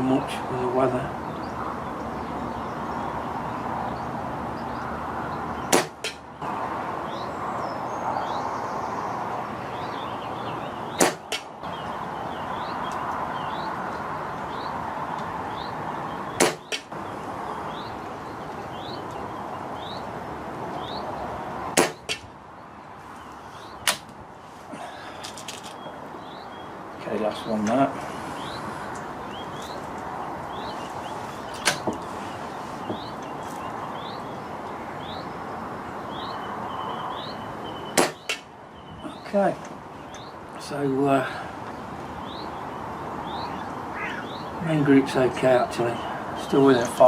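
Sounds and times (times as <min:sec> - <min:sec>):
air rifle shots: 0:05.7 - 0:06.2, 0:11.0 - 0:11.5, 0:16.4 - 0:16.9, 0:21.7 - 0:22.3, 0:38.0 - 0:38.4
faint bird chirps: 0:43.2 - 0:44.6.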